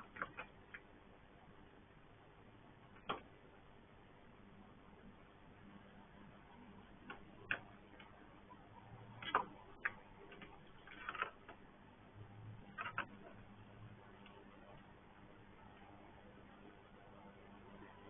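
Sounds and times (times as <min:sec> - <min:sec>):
faint clicks and taps: 0:00.0 - 0:01.0, 0:02.8 - 0:03.6, 0:06.0 - 0:11.7, 0:12.5 - 0:16.1
faint hum: 0:00.0 - 0:18.0.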